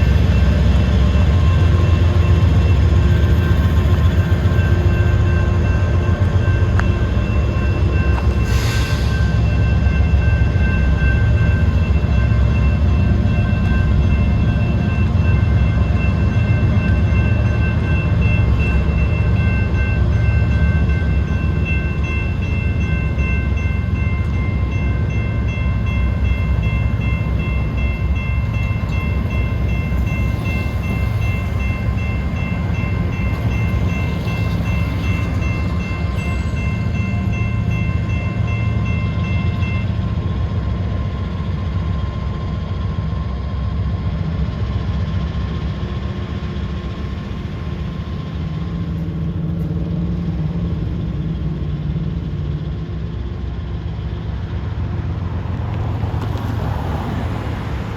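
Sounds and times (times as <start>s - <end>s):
freight train rumbling past: 0.0s - 57.9s.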